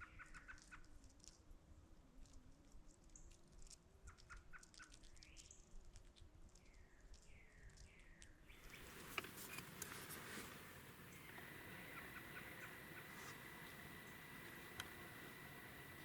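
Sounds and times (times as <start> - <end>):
songbirds chirping: 6.5 - 16.0
faint steady low hum: 8.4 - 16.0.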